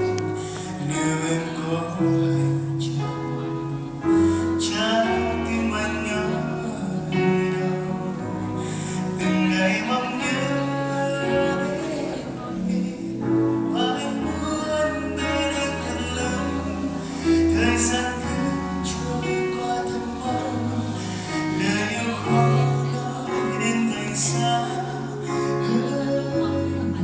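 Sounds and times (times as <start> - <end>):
band playing pop music: 0.0 - 27.0.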